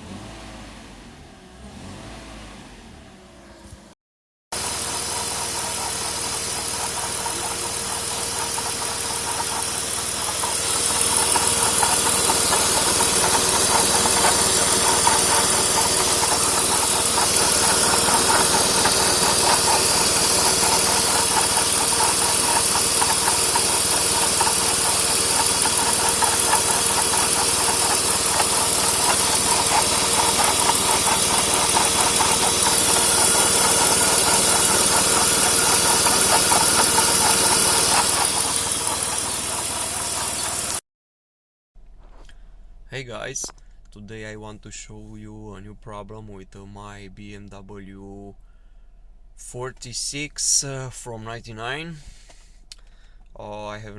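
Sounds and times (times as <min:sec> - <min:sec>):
abnormal mechanical engine noise: 0:00.0 - 0:04.0, 0:04.6 - 0:40.8, 0:41.8 - 0:53.9
car engine running: 0:04.5 - 0:40.8.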